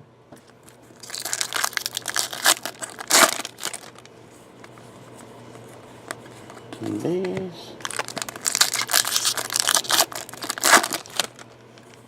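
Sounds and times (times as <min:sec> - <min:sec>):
foil wrapper crinkling and tearing: 0:00.6 - 0:04.1, 0:07.8 - 0:12.0.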